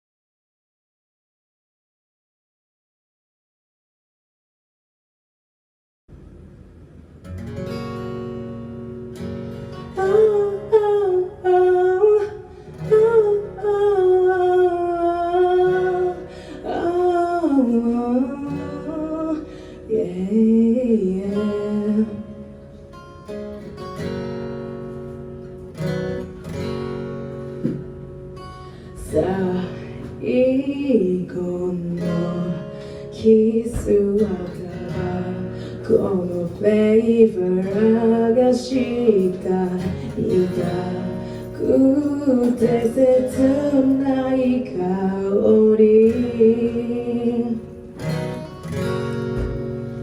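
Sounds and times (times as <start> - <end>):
acoustic guitar strummed: 6.2 - 50.0
person singing wordlessly: 33.3 - 47.6.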